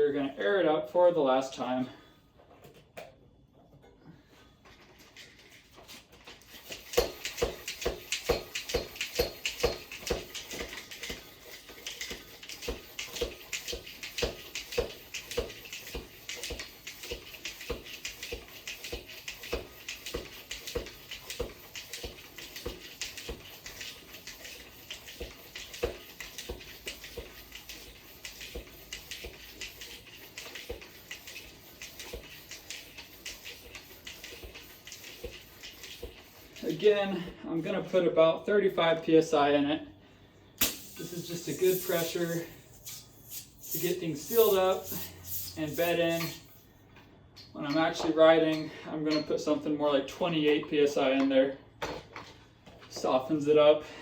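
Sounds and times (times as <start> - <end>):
bicycle pump strokes hissing: 6.4 - 37.3, 40.6 - 46.8.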